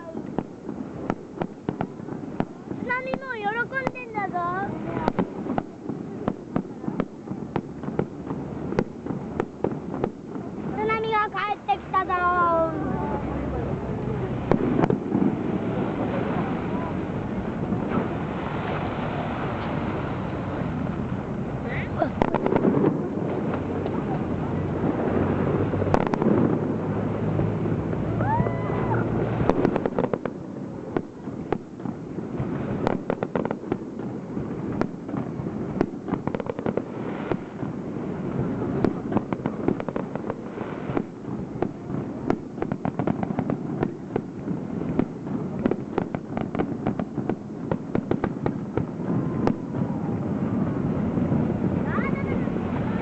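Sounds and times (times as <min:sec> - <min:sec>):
firework crackling: 0:00.0 - 0:53.0
firework shells bursting: 0:00.1 - 0:04.3, 0:05.0 - 0:10.9, 0:14.4 - 0:15.6, 0:22.0 - 0:24.0, 0:25.5 - 0:26.7, 0:28.9 - 0:49.7
firework whistle: 0:28.1 - 0:30.2.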